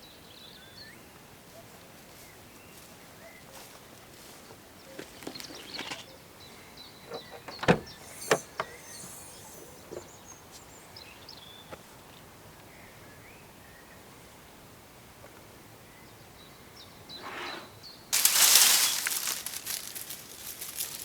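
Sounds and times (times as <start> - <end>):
faint bird chirps: 4.8 - 11.7.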